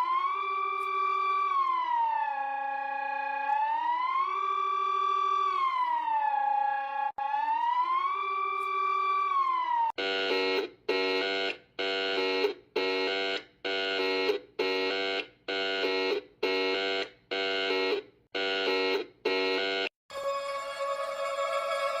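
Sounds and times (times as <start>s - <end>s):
falling siren tone: 0.0s - 22.0s
pulsed alarm blasts: 9.6s - 20.0s.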